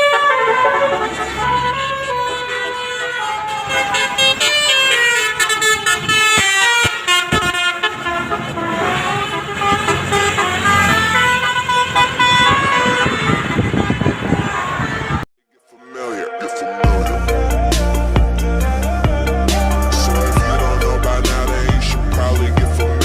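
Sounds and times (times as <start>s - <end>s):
passing vehicle noise: 0.0s - 15.2s
multi-tone bus horn tune: 0.0s - 15.3s, 16.1s - 23.0s.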